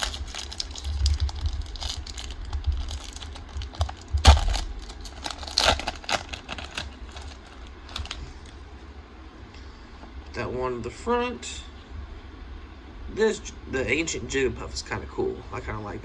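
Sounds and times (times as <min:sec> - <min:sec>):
foil pack crinkling and tearing: 0:00.0 - 0:08.4.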